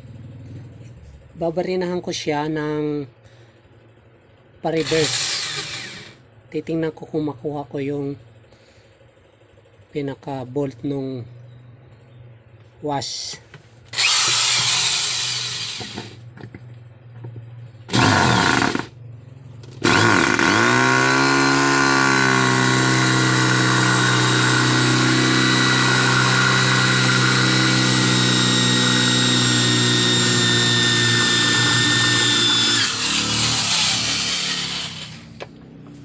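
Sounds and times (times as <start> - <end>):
electric drill running: 4.8 - 6.2, 13.9 - 16.2, 17.9 - 18.9, 19.8 - 35.4.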